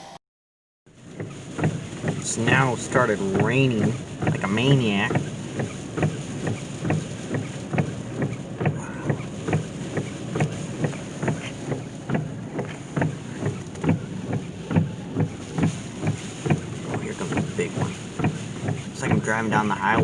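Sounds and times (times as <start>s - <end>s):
rain pelting car roof: 0.9s - 20.0s.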